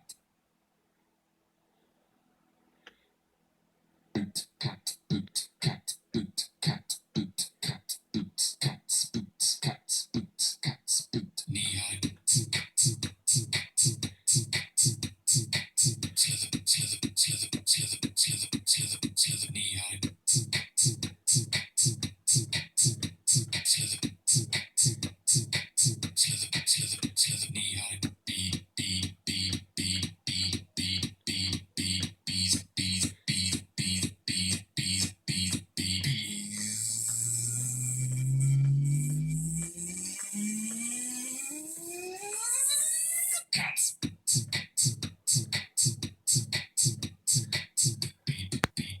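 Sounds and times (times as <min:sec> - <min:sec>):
beatboxed beat: 0:04.2 - 0:49.0
rising pitch sweep: 0:36.4 - 0:43.4.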